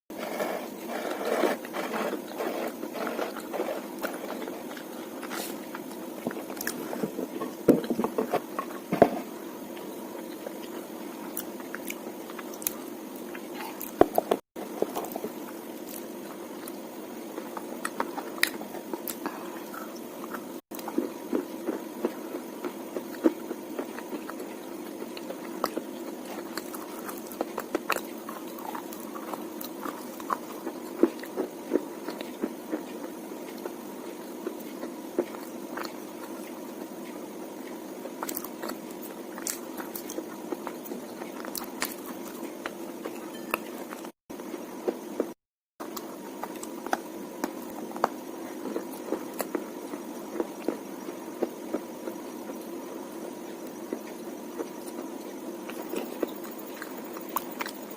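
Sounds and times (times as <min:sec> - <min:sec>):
person chewing crunchy slate: 0:00.1 - 0:16.8, 0:17.4 - 0:44.2, 0:44.8 - 0:52.6, 0:53.6 - 0:57.9.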